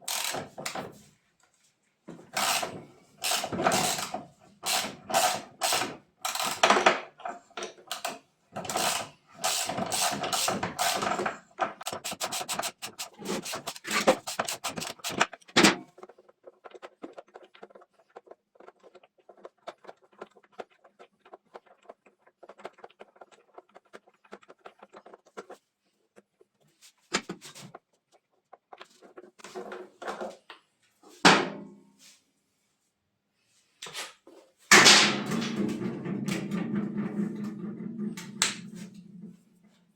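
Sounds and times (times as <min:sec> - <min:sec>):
tool scraping and rubbing metal: 0:02.4 - 0:06.6, 0:08.7 - 0:15.5, 0:35.6 - 0:39.4.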